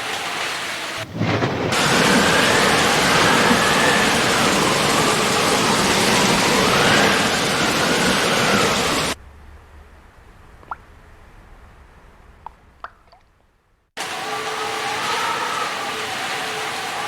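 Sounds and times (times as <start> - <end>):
heavy rain pouring: 0.0 - 9.2, 14.0 - 17.0.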